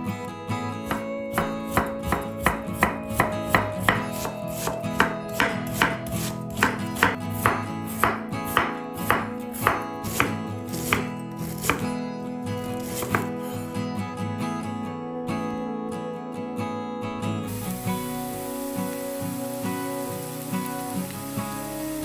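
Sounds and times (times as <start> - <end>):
guitar music: 0.0 - 22.0
knife chopping on cutting board: 0.9 - 12.0, 12.8 - 13.4.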